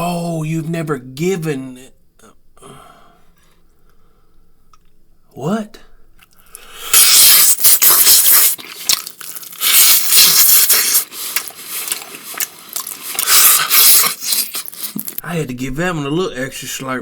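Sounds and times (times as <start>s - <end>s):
smacking and chewing: 6.2s - 15.2s
slurping and sucking: 6.3s - 15.2s.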